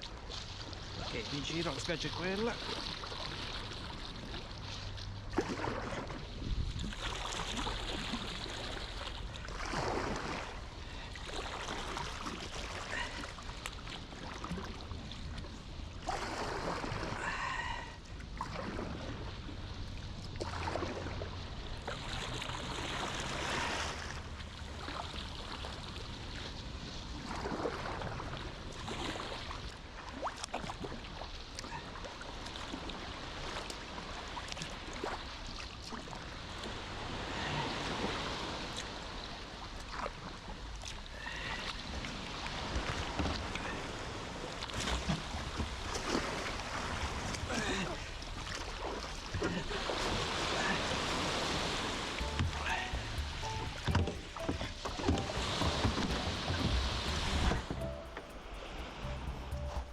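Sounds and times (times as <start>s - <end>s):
paddle splashing in water: 2.2s - 32.9s, 44.4s - 59.9s
water trickling: 51.6s - 59.9s.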